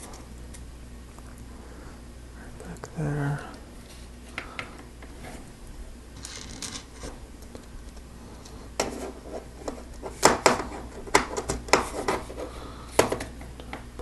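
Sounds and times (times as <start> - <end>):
plastic parts clattering: 6.2 - 7.1.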